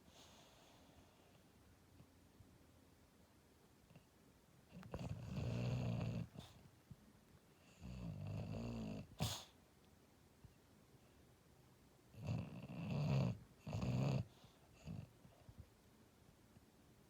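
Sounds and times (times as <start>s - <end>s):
dog snoring: 4.7s - 6.6s, 7.6s - 9.5s, 12.1s - 15.4s.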